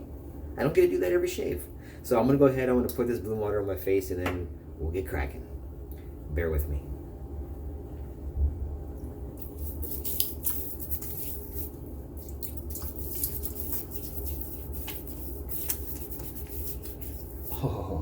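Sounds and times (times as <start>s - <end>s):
low hum: 4.4s - 18.0s
water splashing on face: 9.4s - 17.3s.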